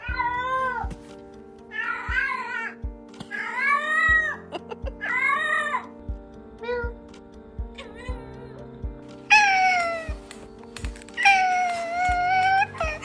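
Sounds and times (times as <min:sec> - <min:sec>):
background music with low beat: 0:00.0 - 0:13.0
cat meowing: 0:09.3 - 0:10.2, 0:11.1 - 0:13.0.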